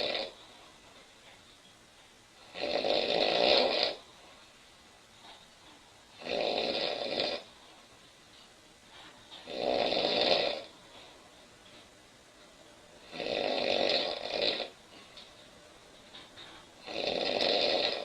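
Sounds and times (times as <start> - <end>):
woman snoring loudly: 0.0 - 0.4, 2.4 - 4.1, 6.2 - 7.5, 9.4 - 10.7, 13.0 - 14.8, 16.8 - 18.0
quiet breathing: 0.0 - 18.0.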